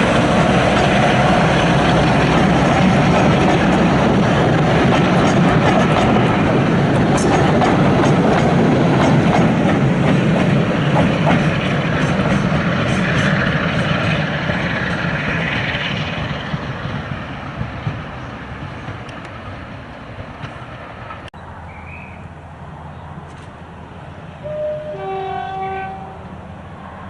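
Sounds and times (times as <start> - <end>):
wheels clicking over rail joints: 0.0 - 21.3
train running on rails: 0.0 - 27.0.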